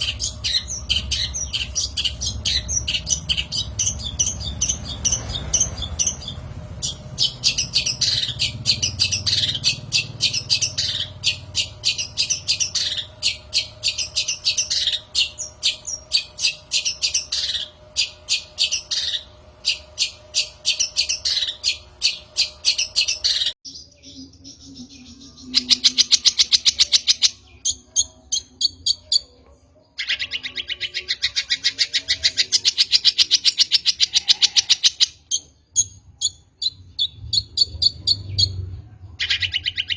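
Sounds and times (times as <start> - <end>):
bird chattering call: 0.0 - 23.6, 30.0 - 35.5.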